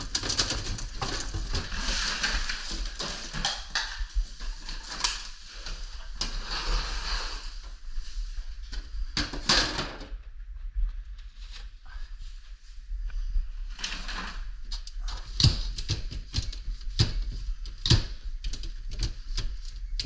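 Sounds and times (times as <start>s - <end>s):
sharp knocks and clatter: 0.0s - 4.1s
scraping and rustling: 0.0s - 10.1s, 11.0s - 20.0s.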